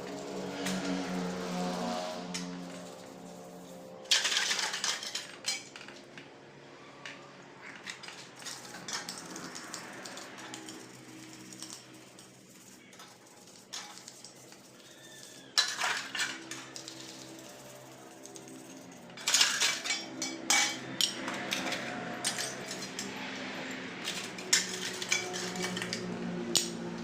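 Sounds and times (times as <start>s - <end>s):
metal tools clinking and clattering: 4.0s - 6.3s, 7.6s - 26.8s.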